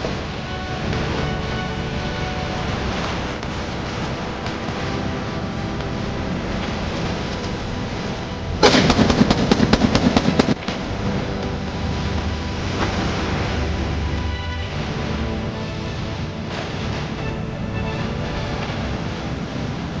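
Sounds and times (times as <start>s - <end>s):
background music: 0.0s - 20.0s
sharp gunshot-like cracks: 8.6s - 10.6s.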